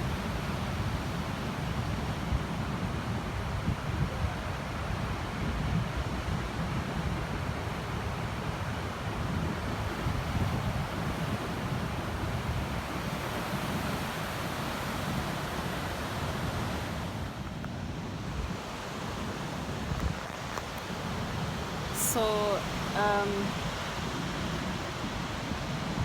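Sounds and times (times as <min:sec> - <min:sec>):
wind on microphone: 0:00.0 - 0:26.0
ocean surf breaking: 0:09.6 - 0:26.0.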